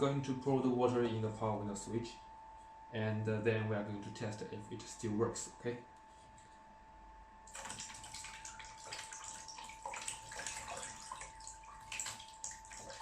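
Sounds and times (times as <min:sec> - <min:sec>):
water splashing and trickling: 0:07.5 - 0:13.0.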